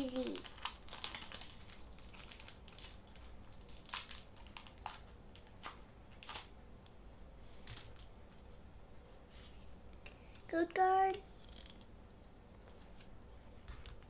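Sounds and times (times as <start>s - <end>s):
foil wrapper crinkling: 0.0s - 6.6s.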